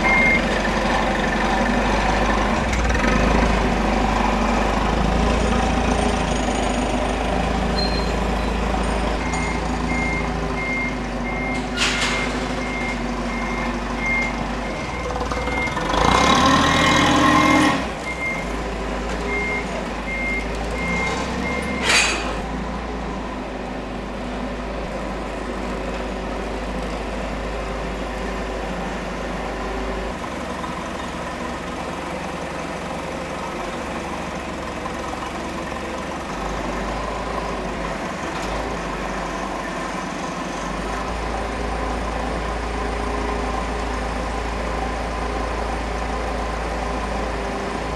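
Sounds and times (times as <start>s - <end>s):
reversing alarm beeping: 0.0s - 0.5s, 7.7s - 8.6s, 9.2s - 15.9s, 19.3s - 22.0s
forklift engine running: 0.0s - 47.9s.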